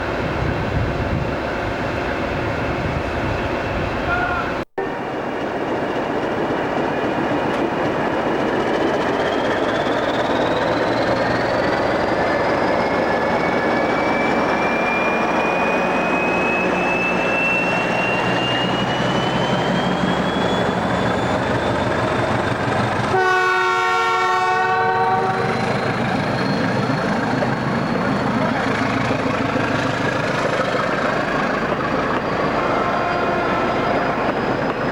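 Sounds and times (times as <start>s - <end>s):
train running with whine: 0.0s - 34.9s
train horn: 4.1s - 5.0s, 23.1s - 25.6s, 32.6s - 34.2s.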